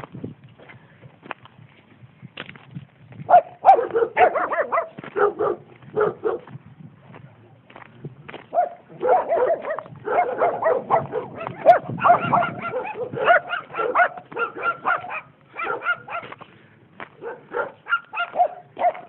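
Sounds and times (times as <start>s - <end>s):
dogs barking: 3.3s - 6.5s, 8.5s - 16.4s, 17.1s - 19.0s.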